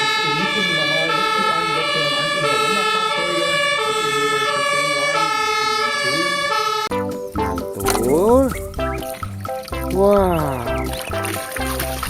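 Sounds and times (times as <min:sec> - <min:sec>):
two-tone fire engine siren: 0:00.0 - 0:07.5.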